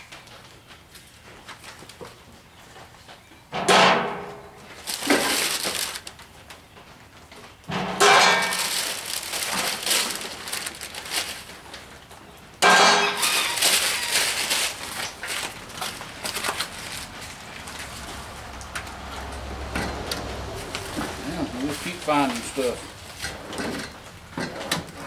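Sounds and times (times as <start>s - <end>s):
packing material rustling: 4.7s - 6.3s, 8.0s - 12.1s, 13.0s - 18.4s, 20.6s - 23.4s
loud crackling bursts: 4.8s - 6.5s, 8.0s - 12.0s, 12.6s - 18.8s.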